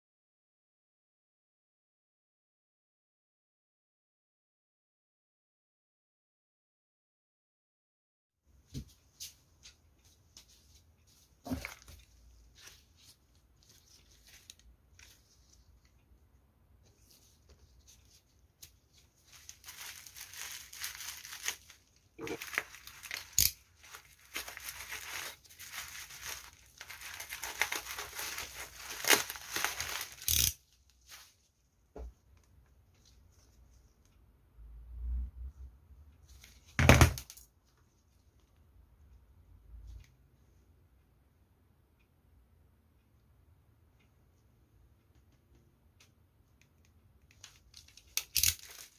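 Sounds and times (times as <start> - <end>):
packaging tearing and crinkling: 19.3 - 30.6, 48.1 - 48.9.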